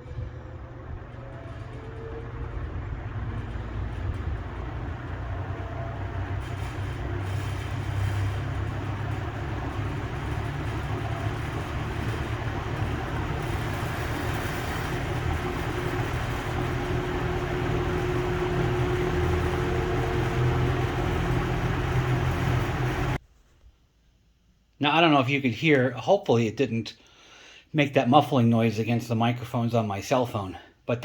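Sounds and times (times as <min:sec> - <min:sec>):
box fan whirring: 0:00.0 - 0:23.2.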